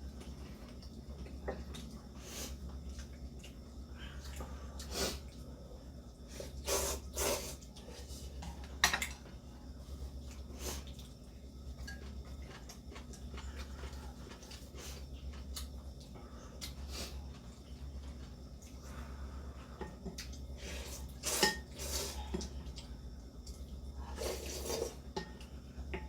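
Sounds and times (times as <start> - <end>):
steady low hum: 0.0 - 26.0
slurping noodles and soup: 24.1 - 25.0.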